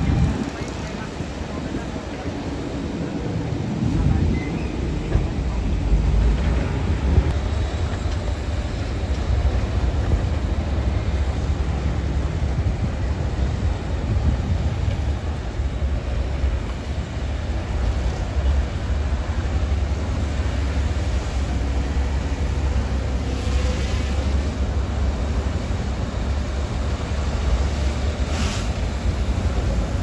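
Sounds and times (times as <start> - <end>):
diesel machinery engine rumble: 0.0 - 30.0.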